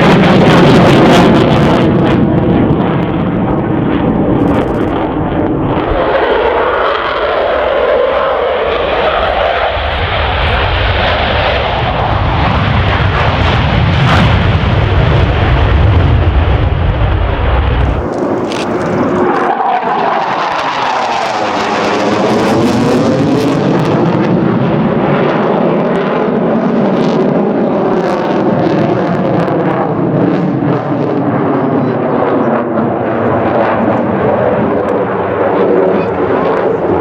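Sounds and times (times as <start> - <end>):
fighter jet flying past: 0.0 - 37.0
deep rumble: 0.3 - 20.2.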